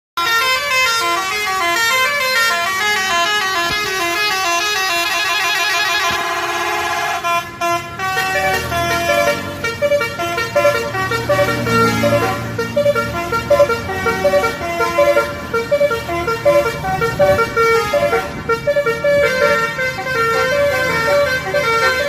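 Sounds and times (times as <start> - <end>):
bus engine rumbling: 0.2 - 22.0
multi-tone bus horn melody: 0.2 - 22.0.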